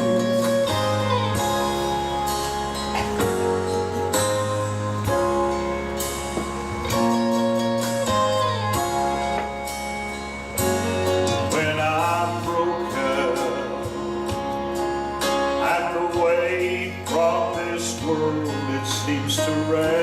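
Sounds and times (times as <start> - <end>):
country gospel instrumental music: 0.0 - 20.0.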